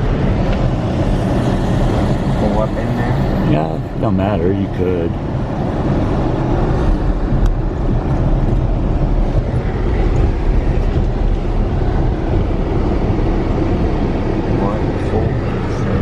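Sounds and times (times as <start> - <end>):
car engine and tyre rumble: 0.0 - 16.0.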